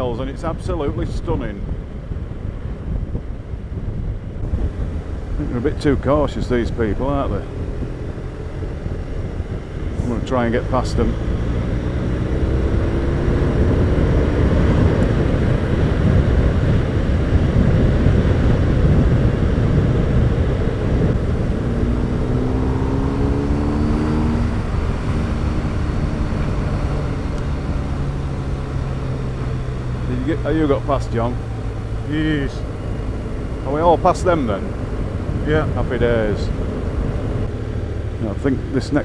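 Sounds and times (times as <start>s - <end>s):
wind noise rushing: 0.0s - 38.8s
motorcycle engine accelerating: 1.6s - 39.0s.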